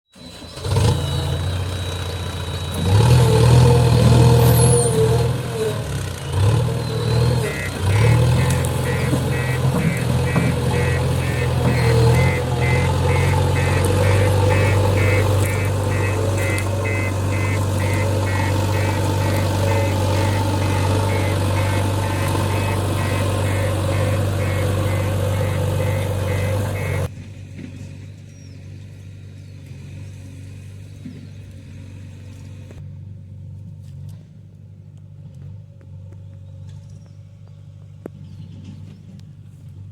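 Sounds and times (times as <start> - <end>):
diesel engine revving: 0.2 - 27.1
high beeps: 7.5 - 27.1.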